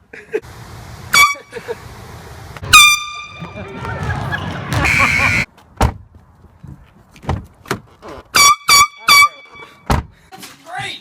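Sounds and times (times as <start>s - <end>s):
air horn blasts: 2.6s - 3.6s, 4.7s - 5.5s
loud noisy sound: 2.6s - 5.5s.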